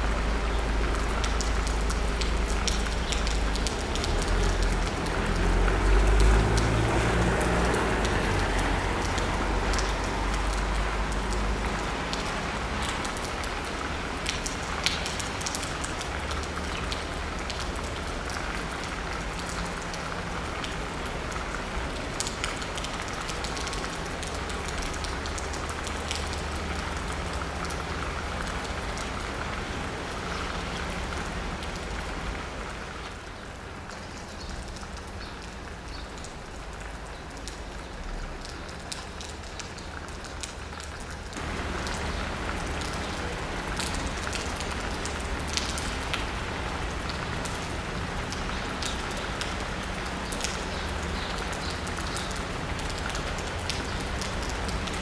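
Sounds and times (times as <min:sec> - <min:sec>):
passing car rumble: 0:00.0 - 0:13.1, 0:41.4 - 0:55.0
rain pattering on asphalt: 0:00.0 - 0:55.0
raindrops ticking: 0:00.0 - 0:55.0.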